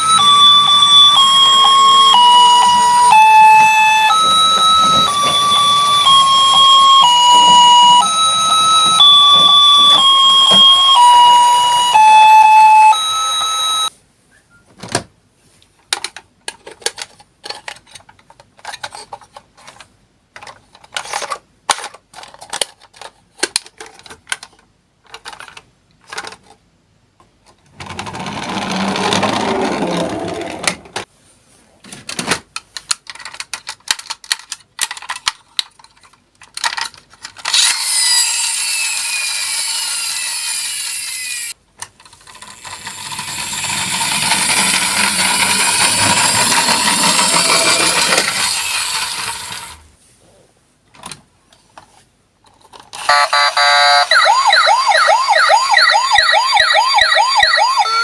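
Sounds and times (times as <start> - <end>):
electronic tone with falling pitch: 0.0 - 13.9
toy car rolling: 0.0 - 13.9, 27.8 - 31.1, 33.0 - 49.9
plastic toy cars clicking: 15.8 - 26.6, 31.9 - 37.9, 41.8 - 49.8.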